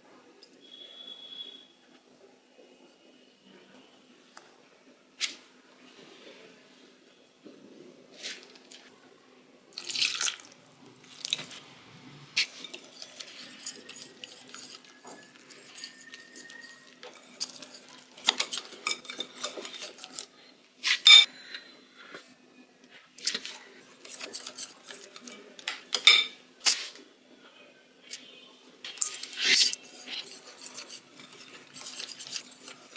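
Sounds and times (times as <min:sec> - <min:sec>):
utensils clattering against dishes: 0:12.4 - 0:21.3, 0:24.0 - 0:26.4, 0:28.9 - 0:32.9.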